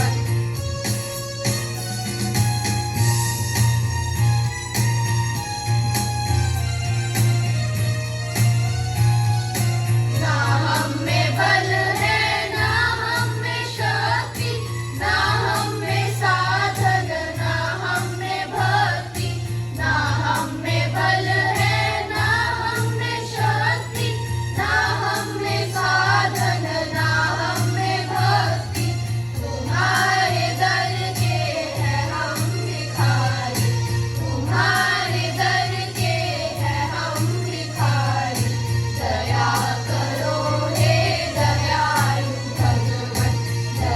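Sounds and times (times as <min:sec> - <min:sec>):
instrumental backing with beat: 0:00.0 - 0:43.9
group singing a prayer: 0:10.2 - 0:43.9.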